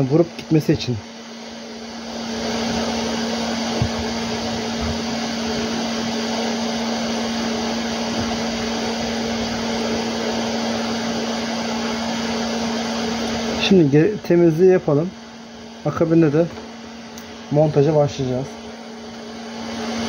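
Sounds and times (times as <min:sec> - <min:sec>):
hot air station blowing: 0:00.0 - 0:20.0.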